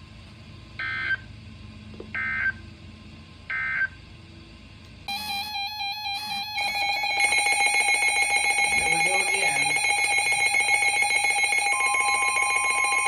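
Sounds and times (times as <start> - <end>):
electronic alert tone: 5.1 - 13.0
two-pitch digital data tone bursts: 5.1 - 13.0.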